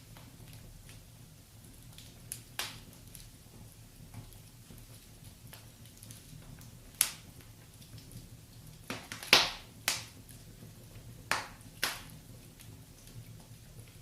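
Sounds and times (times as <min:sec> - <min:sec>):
wood fire crackling: 0:00.0 - 0:14.0
sharp pops from fire: 0:01.7 - 0:14.0.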